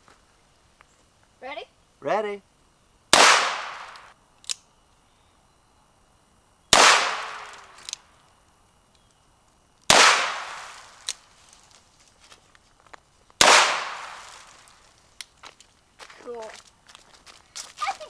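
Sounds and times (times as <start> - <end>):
revolver shots with echo: 3.2 - 4.1, 6.8 - 7.8, 9.9 - 11.0.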